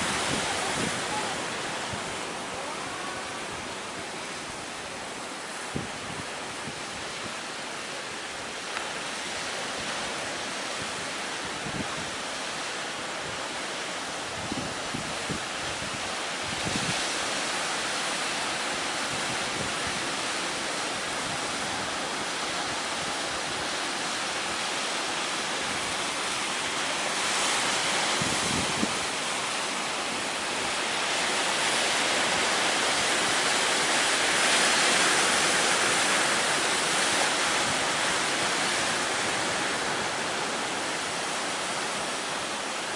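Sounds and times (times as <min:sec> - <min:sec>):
wind on microphone: 0:00.0 - 0:07.5, 0:09.0 - 0:17.6, 0:18.9 - 0:29.8
heavy surf breaking: 0:00.0 - 0:42.9.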